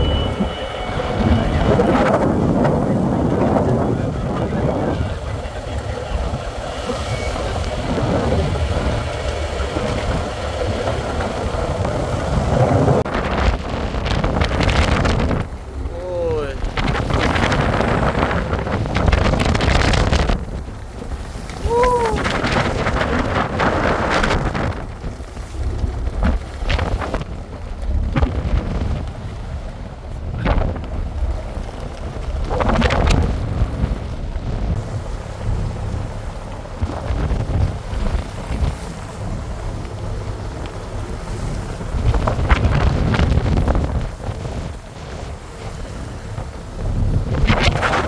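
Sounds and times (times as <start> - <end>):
boat engine rumble: 0.0 - 48.0
rushing wash of noise: 0.0 - 48.0
wind buffeting microphone: 0.0 - 48.0.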